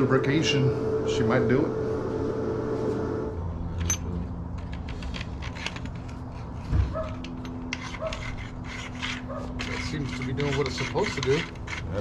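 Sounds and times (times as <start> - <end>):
steady hum: 0.0 - 11.7
metal part clinking and scraping: 3.7 - 12.0.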